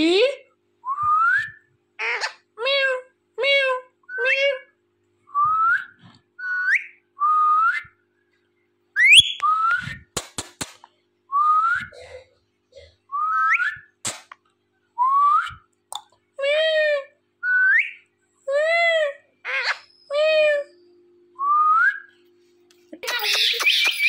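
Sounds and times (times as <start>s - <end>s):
parrot rising whistles: 9.0s - 10.1s.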